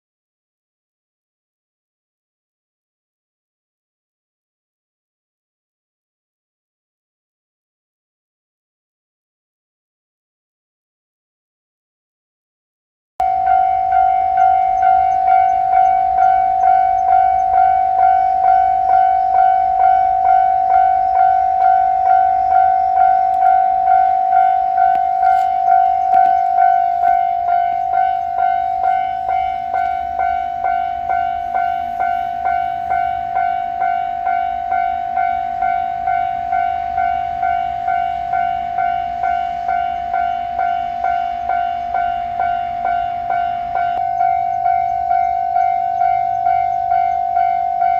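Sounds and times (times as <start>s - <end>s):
level crossing bell dinging: 13.2s - 47.9s.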